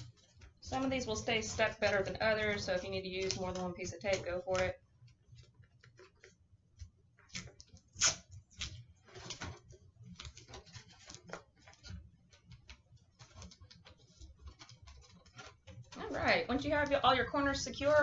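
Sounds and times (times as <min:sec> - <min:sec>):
tape tearing: 0:00.0 - 0:04.8, 0:07.2 - 0:16.9
masking tape pulled off roll: 0:07.2 - 0:16.2.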